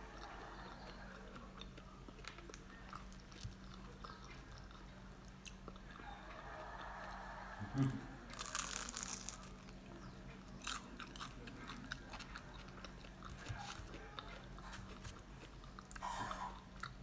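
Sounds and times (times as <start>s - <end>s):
chewing with crackles: 0.0s - 7.6s, 8.3s - 17.0s
crunchy bite into fried food: 8.3s - 9.8s.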